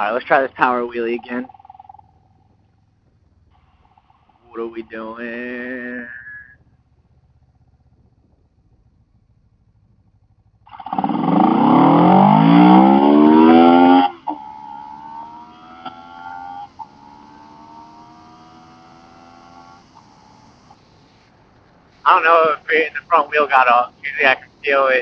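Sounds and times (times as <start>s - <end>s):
motorcycle engine revving: 0.0s - 22.5s.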